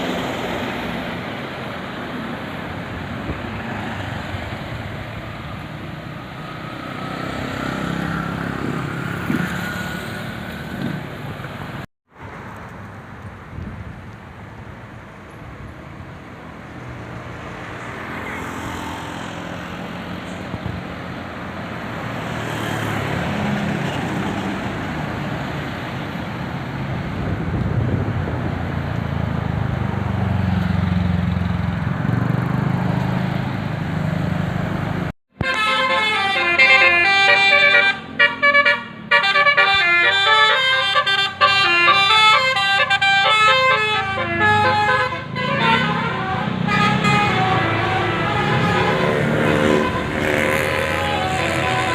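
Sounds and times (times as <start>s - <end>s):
road noise: 0.0s - 51.9s
vehicle engine rumble: 0.0s - 51.9s
bus horn playing melody: 35.4s - 51.9s.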